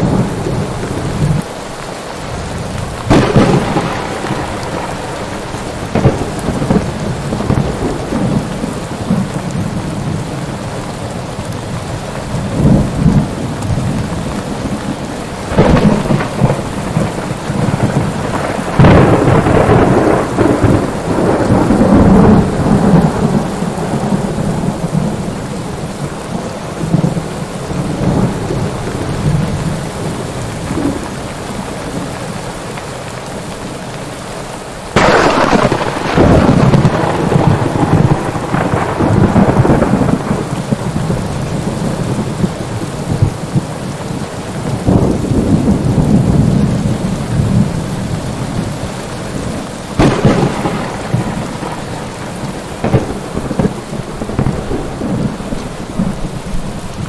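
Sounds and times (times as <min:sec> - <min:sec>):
heavy rain: 0:00.0 - 0:57.0
deep thunder rumble: 0:02.3 - 0:10.7, 0:11.8 - 0:32.1, 0:35.0 - 0:57.0
thunder cracks: 0:02.4 - 0:09.8, 0:14.6 - 0:25.4, 0:35.0 - 0:43.7, 0:44.6 - 0:47.8, 0:48.6 - 0:56.6.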